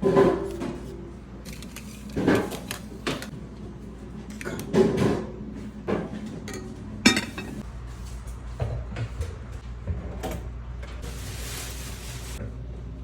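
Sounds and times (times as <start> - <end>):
kitchenware clunks and clinks: 5.9 - 7.6.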